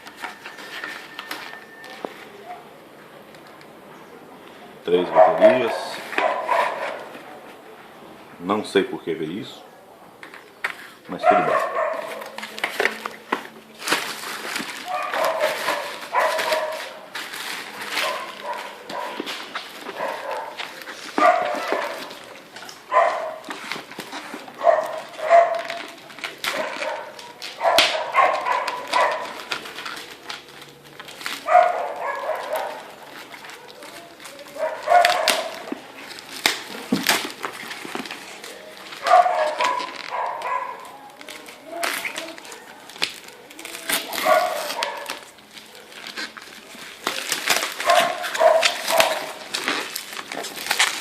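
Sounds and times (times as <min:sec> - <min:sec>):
dog barking: 0:05.0 - 0:07.1, 0:11.1 - 0:12.4, 0:14.8 - 0:17.0, 0:18.0 - 0:22.2, 0:22.9 - 0:23.5, 0:24.6 - 0:25.8, 0:26.5 - 0:29.4, 0:31.4 - 0:35.7, 0:39.0 - 0:41.0, 0:44.1 - 0:45.2, 0:47.8 - 0:49.4.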